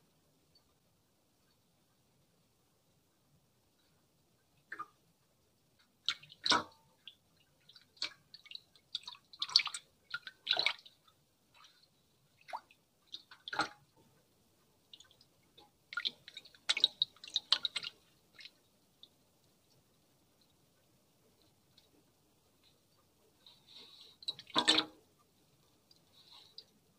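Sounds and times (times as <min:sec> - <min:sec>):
wet squishing and crackling: 0:06.0 - 0:14.0, 0:14.8 - 0:19.2
dripping: 0:06.0 - 0:20.6.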